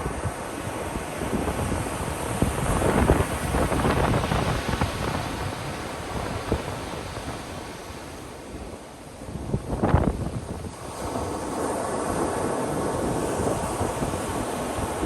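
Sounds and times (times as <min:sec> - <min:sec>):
ocean waves breaking on beach: 0:00.0 - 0:15.0.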